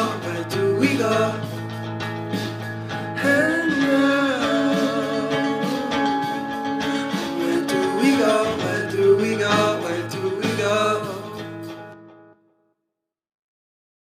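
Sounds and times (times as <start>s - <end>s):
person singing: 0.0s - 1.8s, 2.4s - 11.7s
pop song with guitar: 0.0s - 12.3s.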